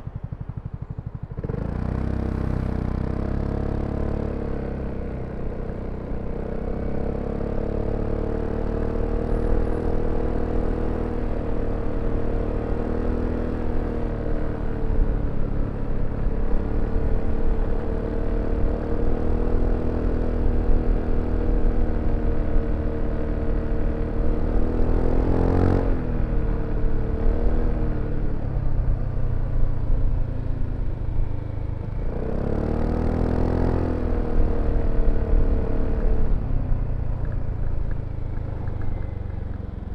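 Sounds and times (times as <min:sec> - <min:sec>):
scooter engine running: 0:00.0 - 0:05.2.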